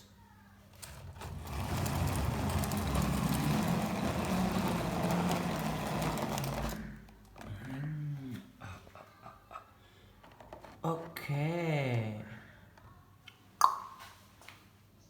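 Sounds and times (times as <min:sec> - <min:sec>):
toy car electric motor whirring: 0:00.8 - 0:07.0
drivetrain and wheels rattling: 0:00.8 - 0:07.5.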